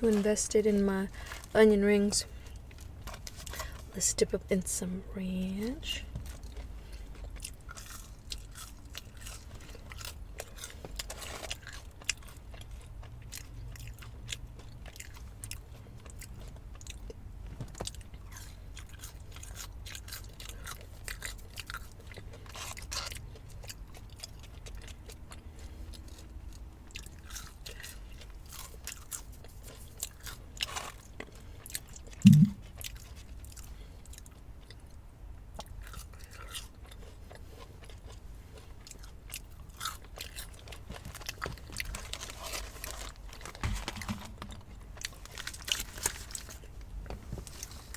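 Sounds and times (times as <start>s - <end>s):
chewing and crunching food: 0.0s - 47.9s
loud low burp: 32.2s - 32.6s
mouth clicks: 32.2s - 32.6s.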